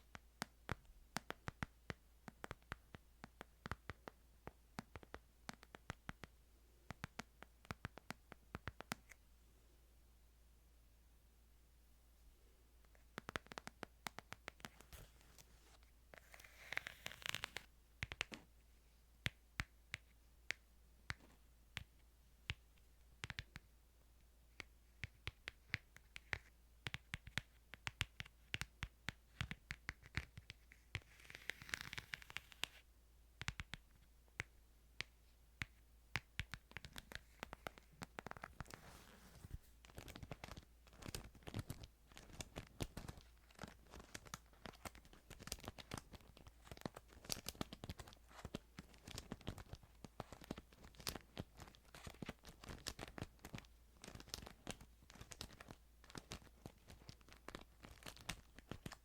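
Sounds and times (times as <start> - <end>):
book handling taps and scratches: 36.2 - 41.2.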